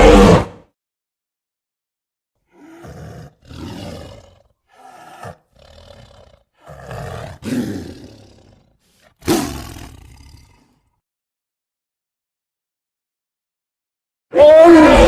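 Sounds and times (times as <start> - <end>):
dinosaur roars and growls: 0.0 - 0.7, 2.5 - 10.9, 14.3 - 15.0.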